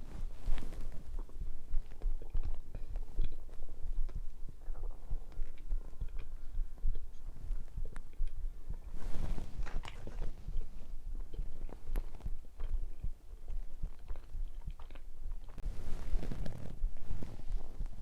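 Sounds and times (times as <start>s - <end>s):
steady low rumble: 0.0s - 18.0s
mouth clicks: 0.6s - 9.0s
chewing and biting donut: 11.2s - 15.6s.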